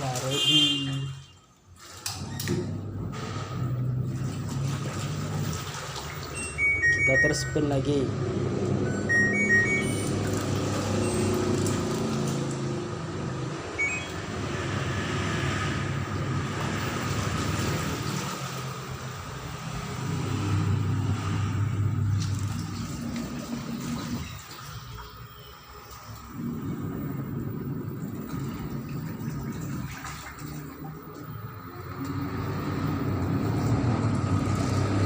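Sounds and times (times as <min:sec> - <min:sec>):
washing machine spinning: 0:00.0 - 0:35.0
control panel beeps: 0:06.4 - 0:08.0, 0:08.7 - 0:11.8, 0:13.8 - 0:14.3.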